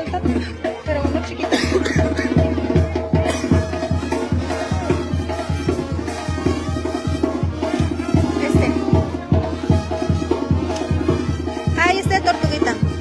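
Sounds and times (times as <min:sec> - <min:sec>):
banda music playing: 0:00.0 - 0:13.0.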